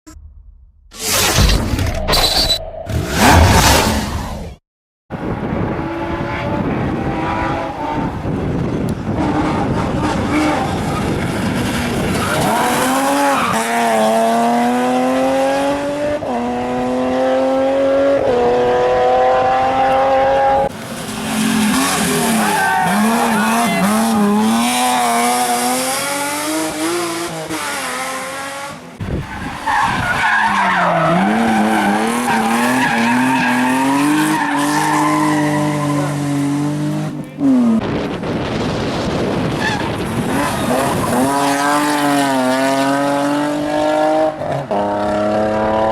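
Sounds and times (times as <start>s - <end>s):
rally car engine accelerating: 5.2s - 45.9s
tyres squealing: 21.4s - 25.4s.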